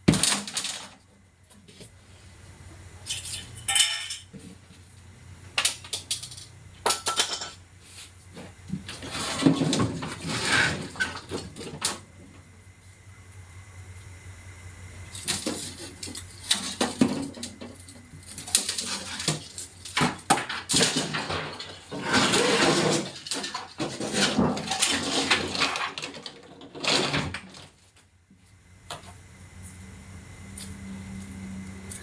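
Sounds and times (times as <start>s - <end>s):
hard parts clattering and scraping: 0.1s - 1.0s, 3.1s - 4.8s, 5.6s - 7.6s, 8.3s - 12.2s, 15.1s - 27.8s.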